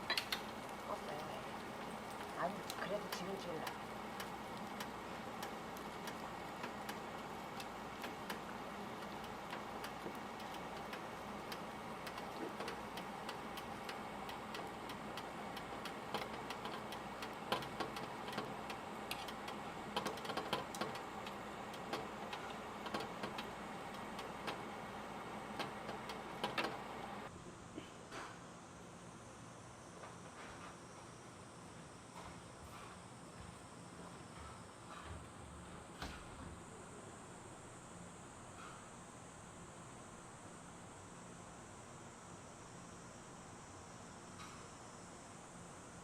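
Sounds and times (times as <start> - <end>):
fish sizzling on grill: 0.0 - 27.2
sharp crackles and pops: 0.0 - 27.3.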